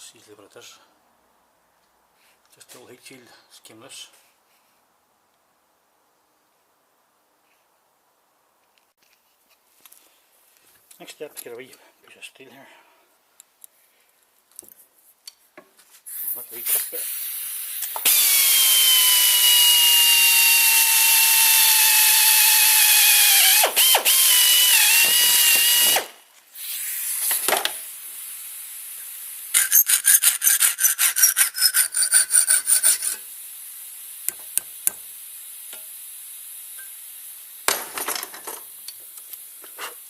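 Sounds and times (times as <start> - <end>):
power tool grinding steel: 29.6 - 33.3
rapid rasping strokes: 29.6 - 33.3.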